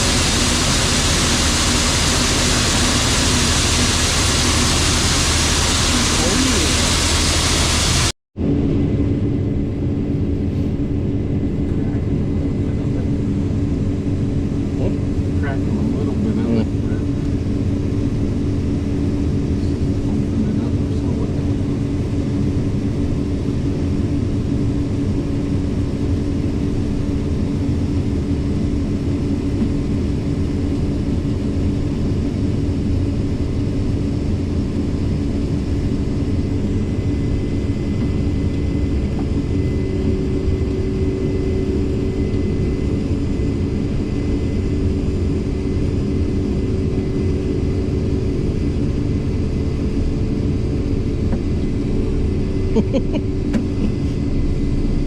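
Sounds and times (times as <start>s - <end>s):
tractor diesel engine droning: 0.0s - 8.1s.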